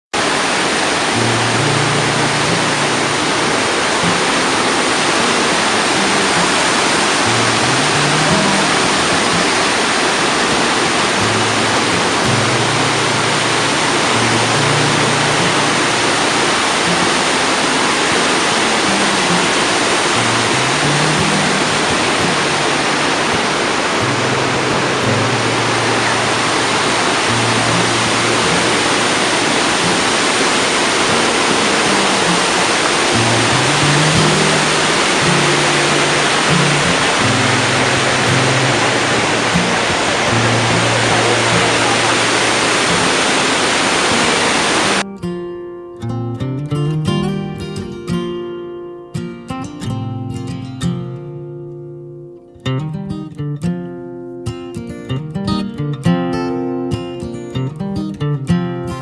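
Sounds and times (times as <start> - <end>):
waterfall roaring: 0.1 - 45.0.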